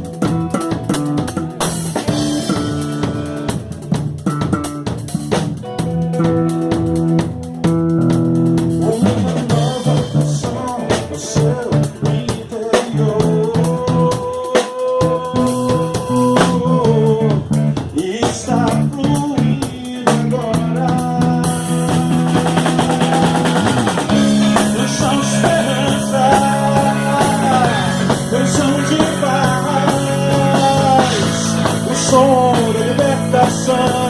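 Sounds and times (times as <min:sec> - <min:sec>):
bass guitar: 0:00.0 - 0:34.0
drum kit playing: 0:00.0 - 0:34.0
electric guitar: 0:00.0 - 0:34.0.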